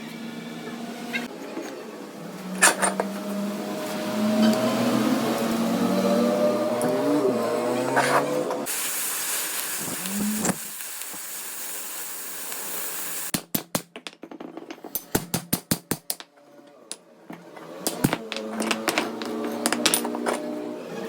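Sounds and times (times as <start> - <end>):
workshop hiss: 8.6 - 13.3.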